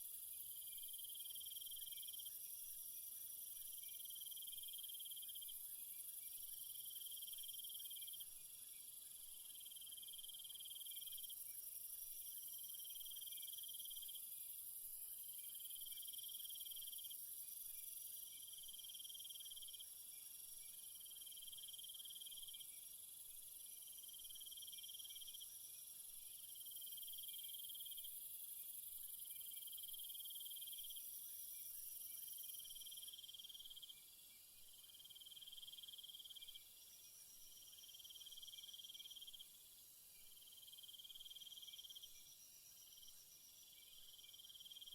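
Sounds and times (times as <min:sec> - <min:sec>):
insects chirping: 0:34.8 - 0:39.4, 0:40.5 - 0:44.9.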